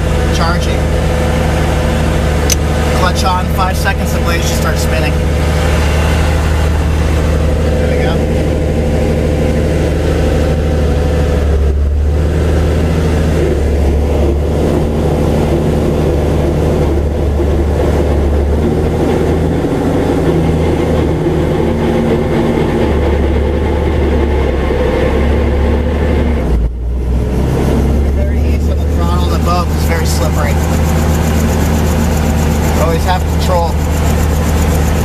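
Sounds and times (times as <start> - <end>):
helicopter engine and rotor hum: 0.0 - 26.1, 27.8 - 35.0.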